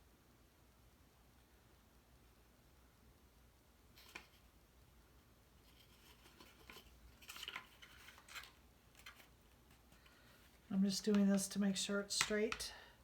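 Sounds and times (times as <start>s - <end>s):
cardstock rustling and tapping: 5.6s - 11.4s.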